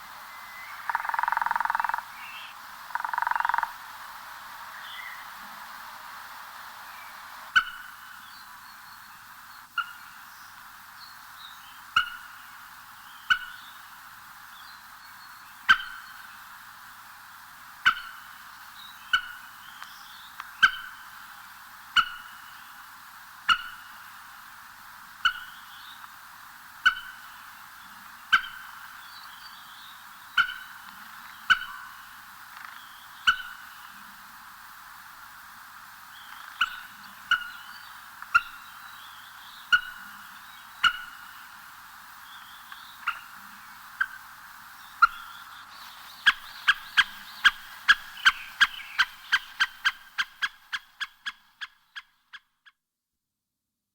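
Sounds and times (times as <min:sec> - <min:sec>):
background animal chorus: 0:00.3 - 0:03.9, 0:36.1 - 0:52.1.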